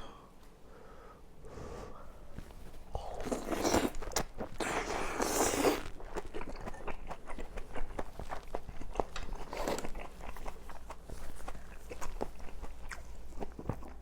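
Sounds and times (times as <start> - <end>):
person biting food: 2.9 - 6.2
wet chewing clicks: 2.9 - 14.0.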